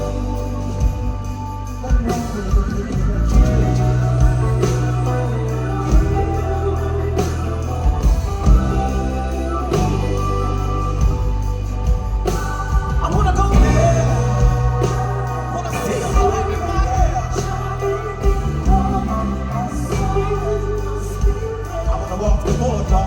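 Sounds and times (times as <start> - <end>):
bass line: 0.0 - 23.0
drum hits: 11.0 - 20.4.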